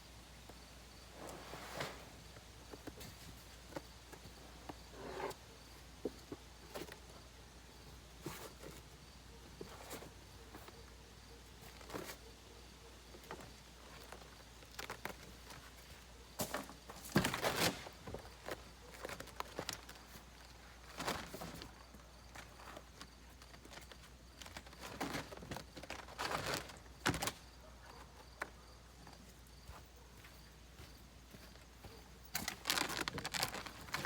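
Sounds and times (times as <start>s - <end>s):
rustling of materials: 0.4s - 34.0s
rustling scrape: 1.1s - 2.4s, 31.8s - 34.0s.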